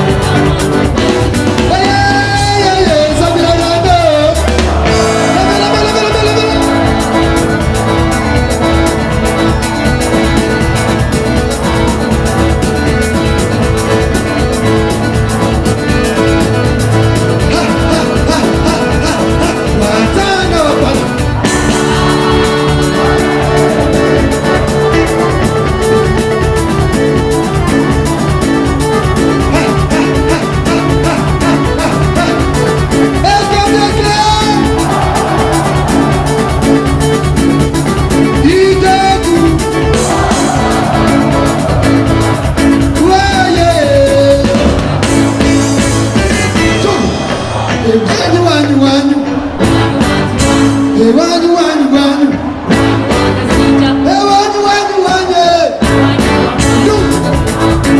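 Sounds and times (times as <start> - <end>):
live band music: 0.0 - 57.9.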